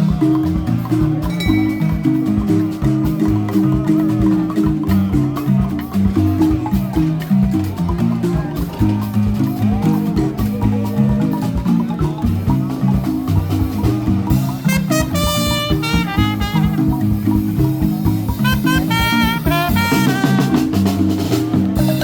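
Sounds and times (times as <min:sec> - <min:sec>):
low mallet-like notes: 0:00.0 - 0:22.0
higher melody line: 0:13.9 - 0:22.0.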